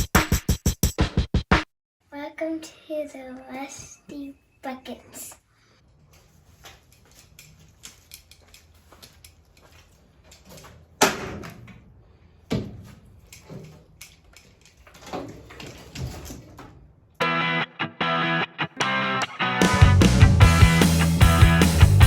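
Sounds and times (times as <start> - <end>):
clicks and knocks of handling: 6.1 - 11.8, 12.9 - 16.7
rock music: 17.2 - 22.0.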